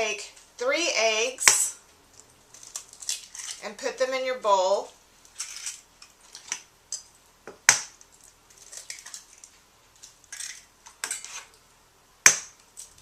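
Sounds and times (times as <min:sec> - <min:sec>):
eggshell crackling apart: 0:02.1 - 0:03.7, 0:07.6 - 0:11.2.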